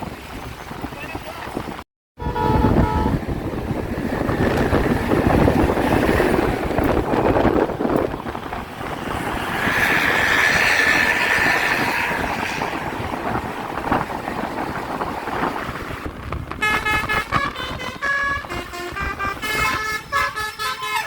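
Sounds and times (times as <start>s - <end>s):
road traffic rumble: 0.0s - 21.0s
wind buffeting microphone: 0.0s - 21.0s
high steady tone: 2.2s - 3.2s.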